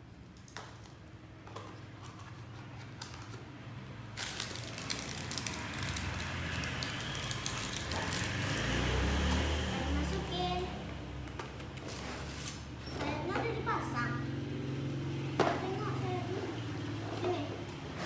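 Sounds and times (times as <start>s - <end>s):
toys and packaging rustling: 4.2s - 9.4s.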